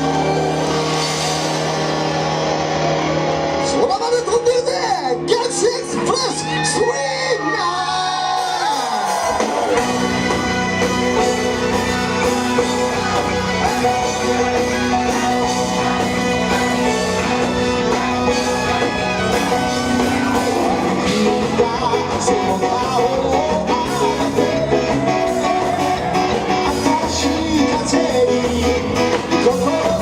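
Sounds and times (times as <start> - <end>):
rock band playing: 0.0 - 30.0
electric guitar sliding notes: 9.3 - 30.0.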